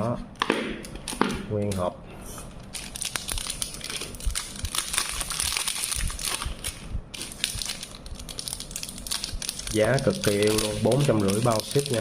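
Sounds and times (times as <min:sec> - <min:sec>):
packaging crinkling and rustling: 0:02.6 - 0:12.0.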